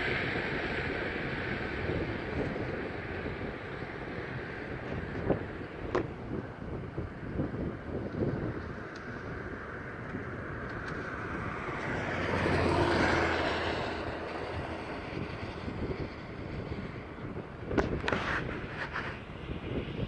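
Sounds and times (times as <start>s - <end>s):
wind noise on microphone: 0.0s - 20.0s
vehicle passing by: 8.7s - 19.6s.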